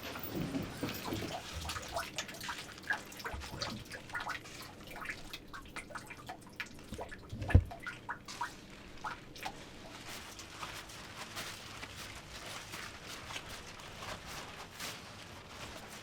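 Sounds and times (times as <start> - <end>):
pigs moving with clicks and knocks: 0.0 - 16.0.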